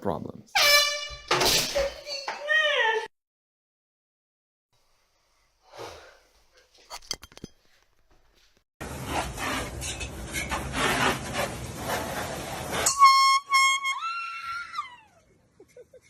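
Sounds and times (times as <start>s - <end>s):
handheld air horn blast: 0.6s - 1.4s, 12.8s - 14.2s.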